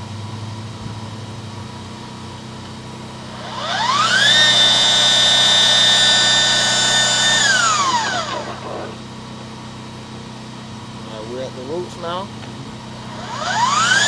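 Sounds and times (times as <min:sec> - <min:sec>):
steady low hum: 0:00.0 - 0:14.0
electric motor whining: 0:02.9 - 0:10.2, 0:11.1 - 0:14.0.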